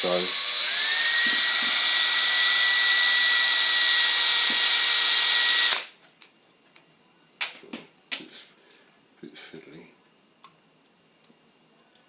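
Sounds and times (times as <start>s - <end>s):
electric drill whining: 0.0s - 5.8s.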